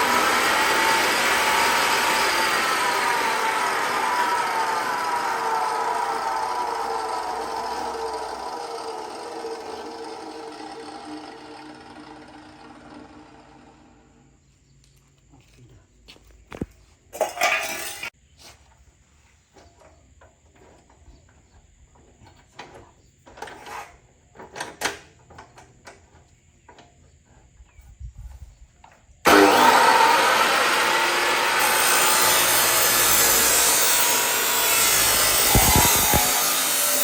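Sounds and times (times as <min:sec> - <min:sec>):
abrasive cut-off saw grinding: 0:00.0 - 0:14.1, 0:29.3 - 0:37.0.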